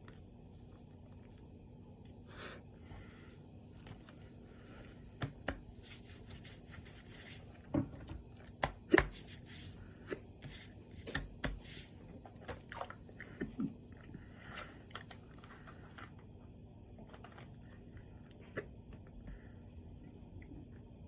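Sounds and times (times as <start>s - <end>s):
person chewing: 12.1s - 19.1s.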